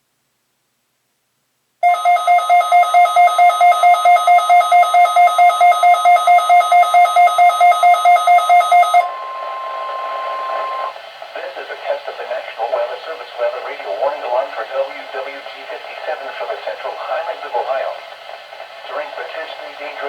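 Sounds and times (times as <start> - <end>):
pulsing electronic alarm beeps: 1.8 - 10.9
steady alert tone: 8.9 - 10.9
light static: 9.0 - 20.0.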